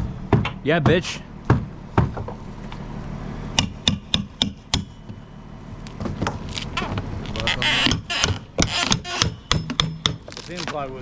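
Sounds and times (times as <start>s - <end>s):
hammer strikes ringing: 3.6s - 5.4s, 7.8s - 10.3s.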